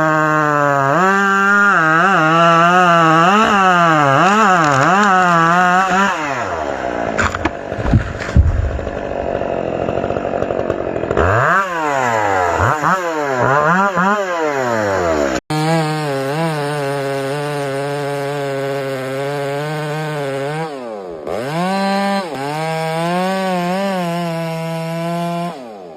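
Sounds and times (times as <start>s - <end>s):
chainsaw engine revving: 0.0s - 25.9s
loud knocks: 7.2s - 9.4s.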